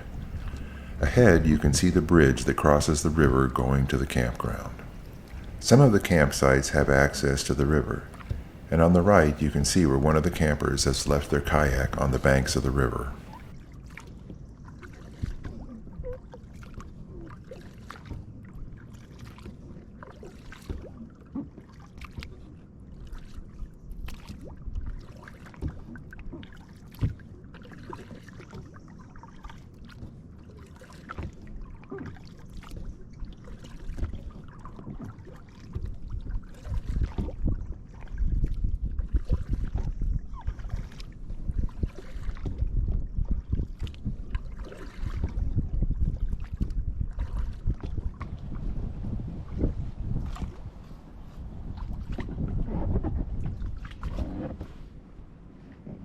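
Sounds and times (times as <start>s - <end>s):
water dripping from paddle: 0.0s - 1.1s, 4.1s - 5.6s, 8.0s - 8.7s
wind rumble on microphone: 0.0s - 13.6s, 31.2s - 56.0s
kayak paddle splashing in water: 0.0s - 22.4s, 24.0s - 56.0s.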